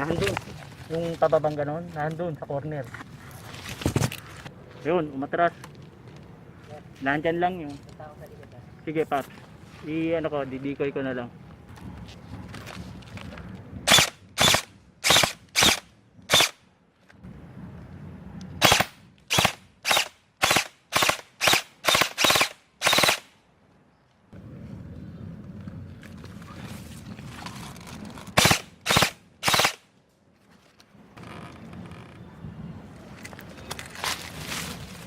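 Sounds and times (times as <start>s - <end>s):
airsoft gun single shots: 13.9s - 16.6s, 18.6s - 23.3s, 28.4s - 29.8s.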